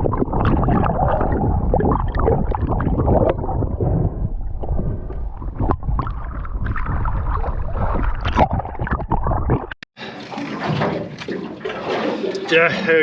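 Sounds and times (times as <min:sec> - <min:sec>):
muffled underwater rumble: 0:00.0 - 0:09.7
water gurgling: 0:00.0 - 0:13.0.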